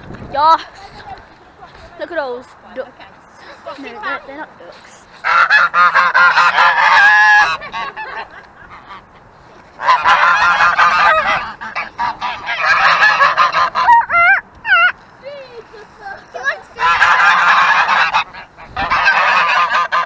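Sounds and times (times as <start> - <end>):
geese honking: 3.7 - 20.0.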